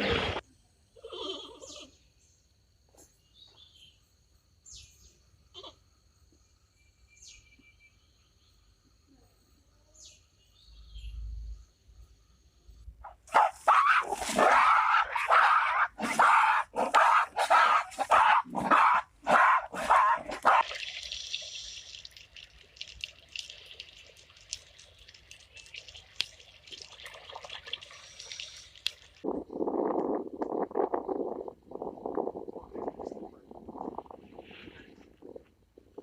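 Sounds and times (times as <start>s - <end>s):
dog barking: 13.0s - 20.6s
small ticks and drips: 20.6s - 29.2s
faint hiss: 20.8s - 26.4s.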